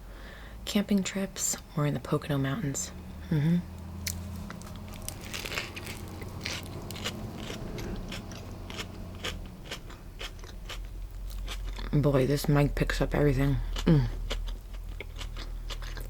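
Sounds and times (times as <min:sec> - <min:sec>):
bread crunching: 0:04.0 - 0:12.0
biting and chewing bread: 0:04.0 - 0:12.7, 0:13.5 - 0:16.0.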